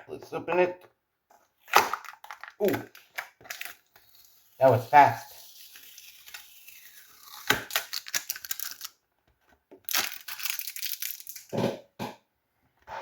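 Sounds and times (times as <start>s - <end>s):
packaging crinkling and rustling: 1.6s - 4.3s, 5.3s - 9.0s, 9.8s - 11.6s.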